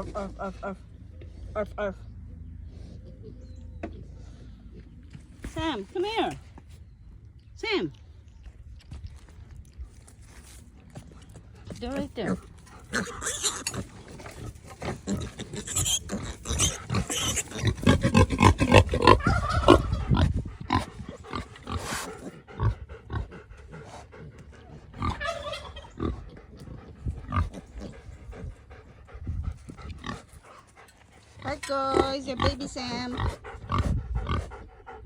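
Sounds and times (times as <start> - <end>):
pigs grunting: 11.6 - 35.0.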